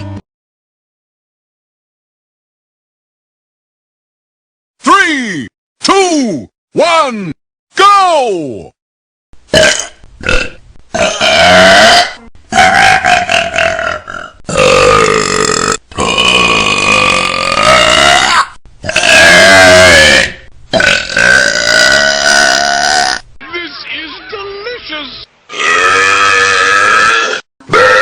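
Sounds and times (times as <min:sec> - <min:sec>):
loud drawn-out burps: 0:09.5 - 0:23.2, 0:25.5 - 0:28.0.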